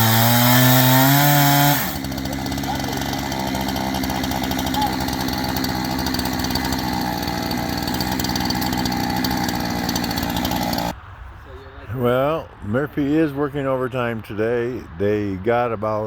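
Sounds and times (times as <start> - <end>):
small gasoline saw engine running: 0.0 - 10.9.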